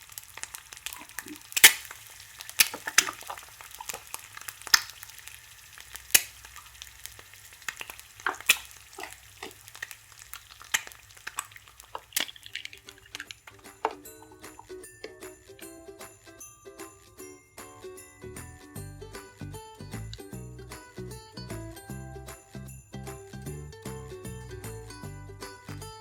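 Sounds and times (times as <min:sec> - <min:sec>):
jingly background music: 0:13.4 - 0:26.0.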